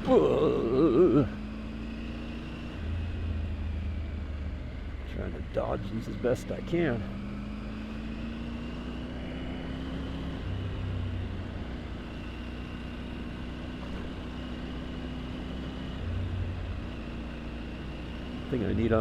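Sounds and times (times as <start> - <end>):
motorcycle engine running: 0.0 - 19.0
road and wind noise: 0.0 - 19.0.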